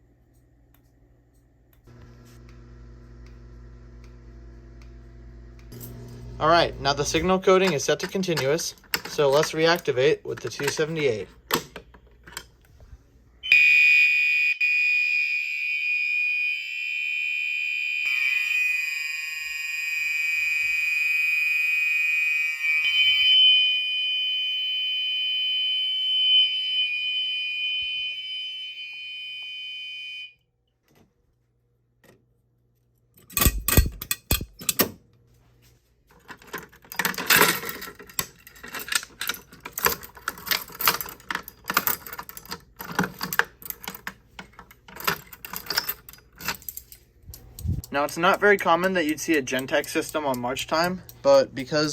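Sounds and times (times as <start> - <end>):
fire alarm horns steady tone: 13.4 - 30.5.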